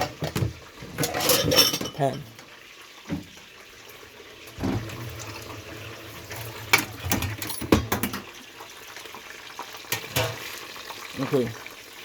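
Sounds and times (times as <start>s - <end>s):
utensils clinking on cookware: 0.0s - 2.5s, 6.7s - 8.3s, 9.9s - 10.5s
water running from a tap: 0.0s - 12.0s.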